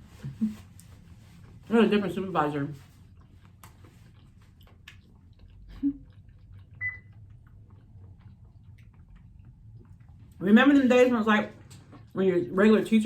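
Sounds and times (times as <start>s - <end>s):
person chewing food: 2.8s - 10.4s, 11.6s - 12.2s.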